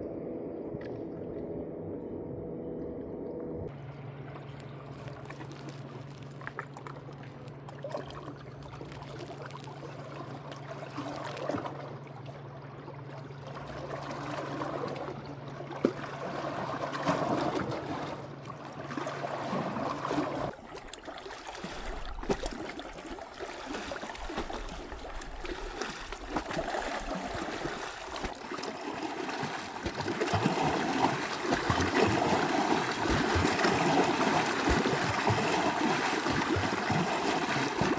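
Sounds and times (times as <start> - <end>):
low steady hum: 0.0 - 37.9
water trickling and running: 20.4 - 37.9.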